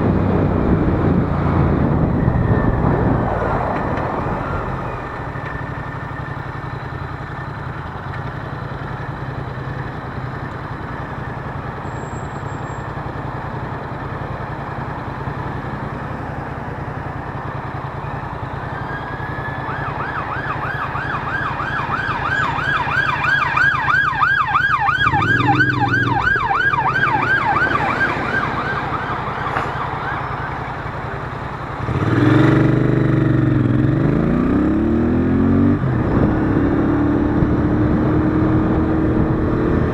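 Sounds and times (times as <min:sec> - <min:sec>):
emergency siren warbling yelp: 0:00.5 - 0:06.8, 0:18.0 - 0:32.3
motorcycle engine running: 0:05.1 - 0:19.5, 0:20.9 - 0:39.9.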